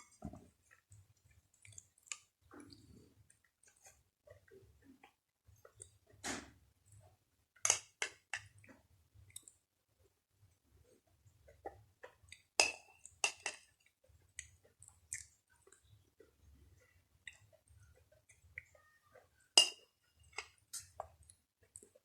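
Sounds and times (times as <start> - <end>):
chewing with mouth clicks: 0.1 - 6.0, 13.8 - 19.4.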